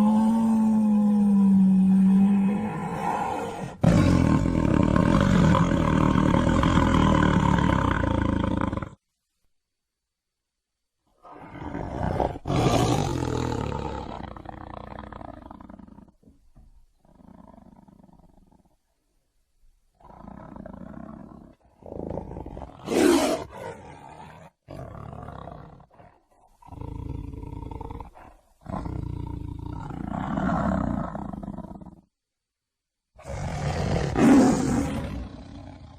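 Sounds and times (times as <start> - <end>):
tiger roaring and growling: 0.0 - 9.0, 11.2 - 16.2, 20.0 - 32.0, 33.2 - 35.9.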